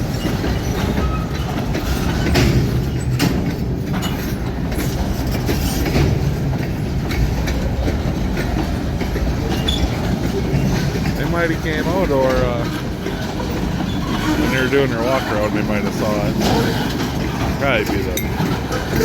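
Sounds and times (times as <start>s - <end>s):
train rumbling past: 0.0s - 19.0s
wheels clacking on rail joints: 0.0s - 19.0s.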